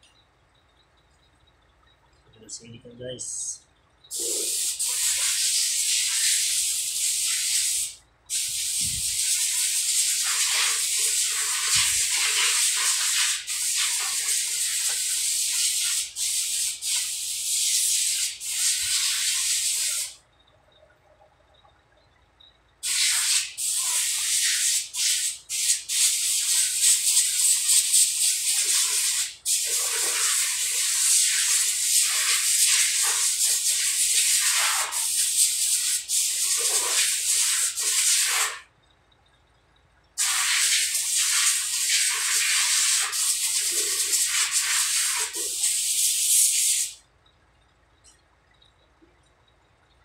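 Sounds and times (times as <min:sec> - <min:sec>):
pressurised spray hissing: 0:04.1 - 0:20.2, 0:22.8 - 0:38.7, 0:40.2 - 0:47.0.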